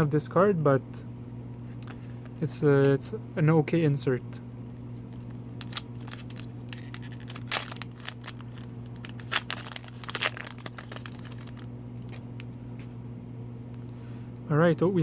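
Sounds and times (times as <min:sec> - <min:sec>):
foil wrapper crinkling and tearing: 0:05.1 - 0:12.8.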